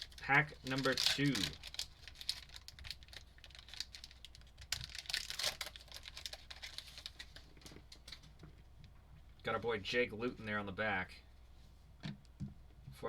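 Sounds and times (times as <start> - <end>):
wrapper crinkling: 0.0 - 8.2.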